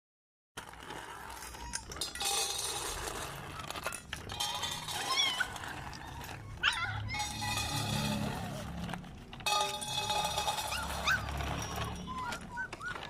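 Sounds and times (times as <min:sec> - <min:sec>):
puppy whimpering: 0:01.5 - 0:02.0, 0:04.9 - 0:08.6, 0:10.4 - 0:13.0.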